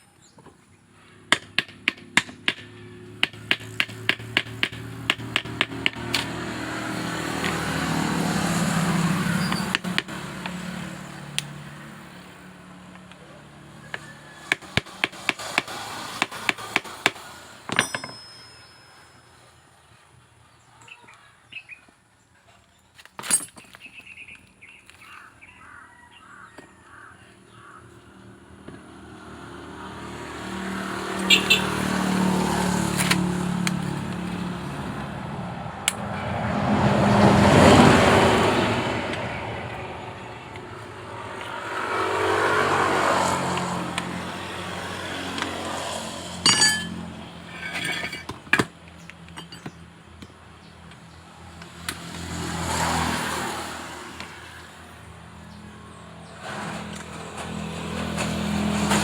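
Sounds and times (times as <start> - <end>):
road vehicles passing: 0.0 - 59.0.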